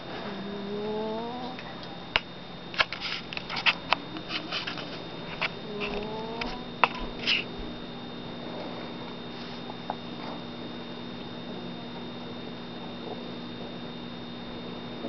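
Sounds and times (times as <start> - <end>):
cat snoring: 0.0 - 1.7, 5.6 - 7.5.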